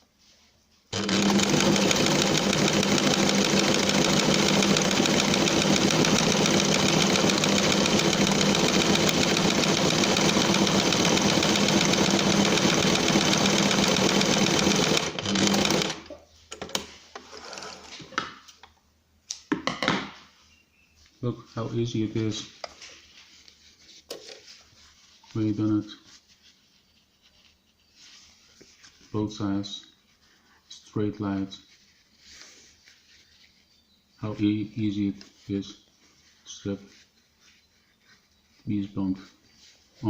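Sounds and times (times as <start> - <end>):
sewing machine running: 0.9 - 16.1.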